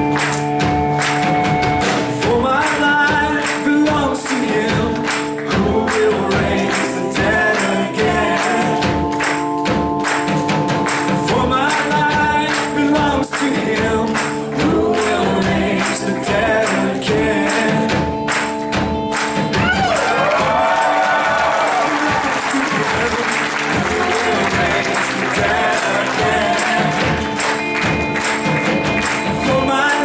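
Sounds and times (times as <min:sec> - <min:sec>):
keyboard chords: 0:00.0 - 0:30.0
people clapping: 0:00.0 - 0:30.0
people singing: 0:02.2 - 0:09.3, 0:11.2 - 0:18.2, 0:21.9 - 0:28.3, 0:29.0 - 0:30.0.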